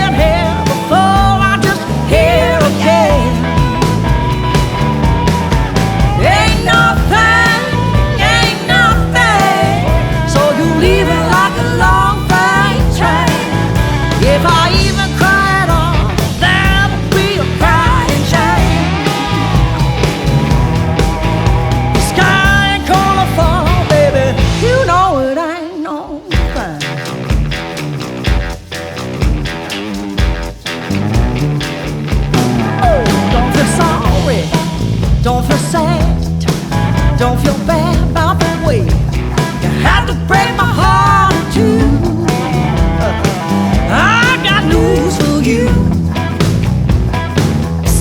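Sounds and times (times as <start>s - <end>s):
country-rock band playing: 0.0s - 48.0s.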